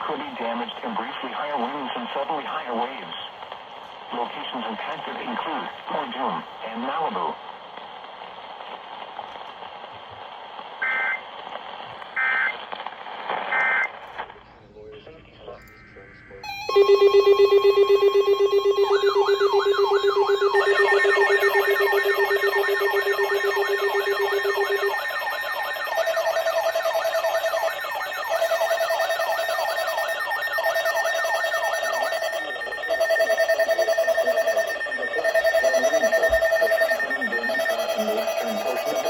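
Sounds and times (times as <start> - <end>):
fast warbling tone: 16.4 - 39.0
long repeating beep: 16.4 - 39.0
steady alert tones: 16.4 - 39.0.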